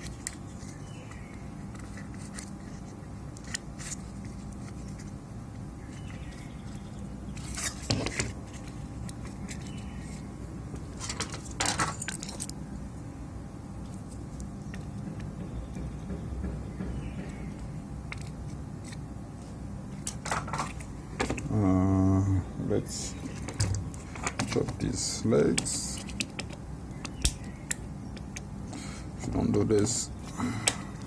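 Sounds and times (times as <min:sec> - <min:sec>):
steady low hum: 0:00.0 - 0:31.0
clatter of metal parts: 0:11.0 - 0:12.5.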